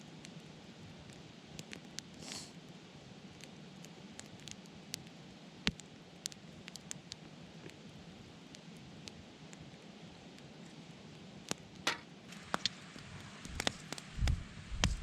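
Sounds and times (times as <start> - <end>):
wood fire crackling and popping: 0.0 - 15.0
short hiss: 2.2 - 2.6.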